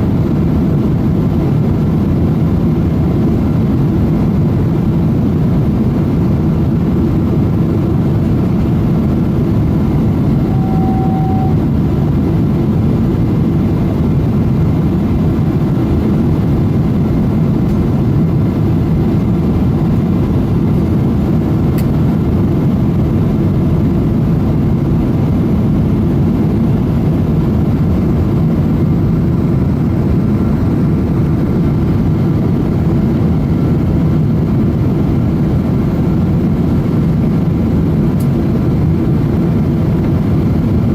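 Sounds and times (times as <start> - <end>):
jet engine cabin rumble: 0.0 - 40.9
faint short tone: 10.4 - 11.7.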